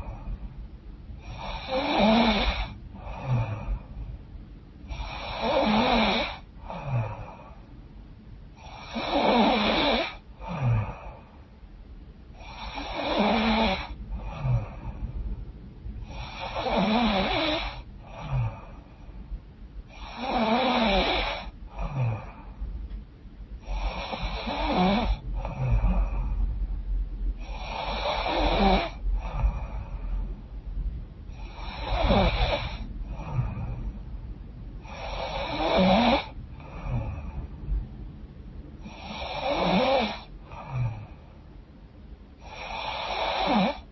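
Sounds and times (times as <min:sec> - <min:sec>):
woman snoring through stuffy nose: 0:01.2 - 0:03.8, 0:04.9 - 0:07.6, 0:08.6 - 0:11.2, 0:12.4 - 0:15.0, 0:16.0 - 0:18.8, 0:19.9 - 0:22.5, 0:23.6 - 0:26.4, 0:27.4 - 0:30.2, 0:31.3 - 0:34.0, 0:34.8 - 0:37.4, 0:38.8 - 0:41.2, 0:42.4 - 0:43.9.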